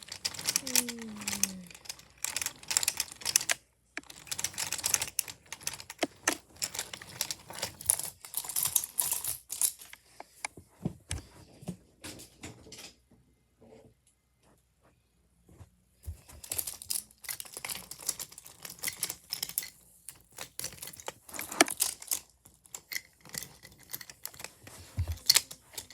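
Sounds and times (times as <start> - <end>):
wooden toy trains clattering: 0.0 - 10.5, 16.1 - 25.9.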